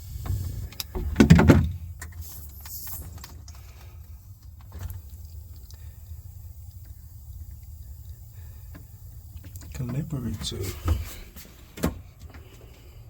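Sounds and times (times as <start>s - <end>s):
steady low hum: 0.0s - 13.0s
dull thump: 0.2s - 1.9s.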